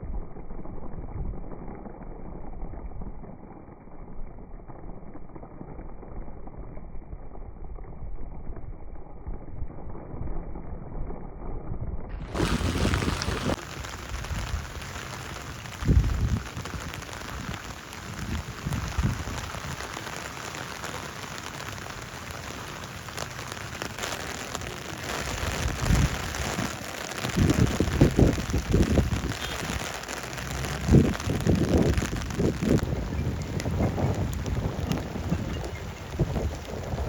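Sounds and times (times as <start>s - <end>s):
heavy rain falling: 12.2s - 37.0s
wind gusts buffeting microphone: 12.3s - 37.0s.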